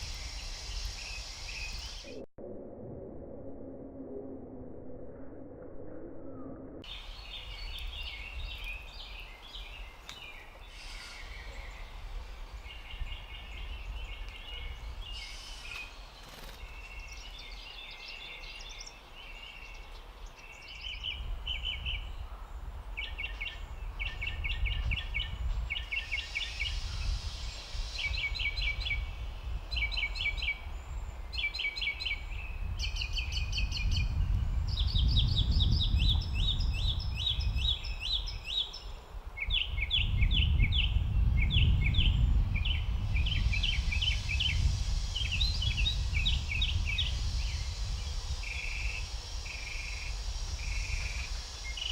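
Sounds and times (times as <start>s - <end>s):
small birds chirping: 0.0s - 2.2s, 6.8s - 51.9s
low rumble: 1.7s - 6.9s.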